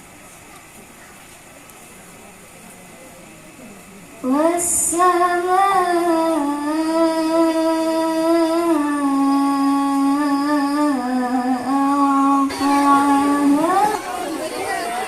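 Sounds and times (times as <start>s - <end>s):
person chanting a long sung note: 4.4s - 14.8s.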